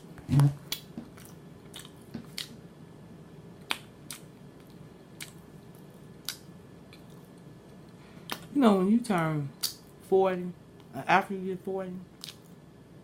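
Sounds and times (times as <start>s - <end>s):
person chewing with smacking: 0.2s - 2.6s, 3.6s - 8.5s, 12.2s - 12.6s.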